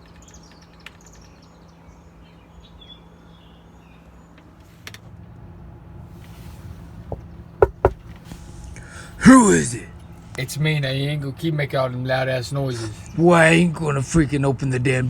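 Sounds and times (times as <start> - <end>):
steady low hum: 5.1 - 15.0
knock on door: 7.1 - 8.1.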